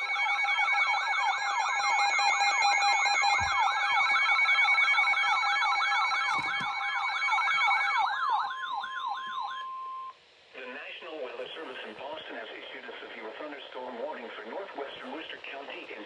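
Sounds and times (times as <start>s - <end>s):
electronic siren alarm warbling: 0.0s - 10.1s.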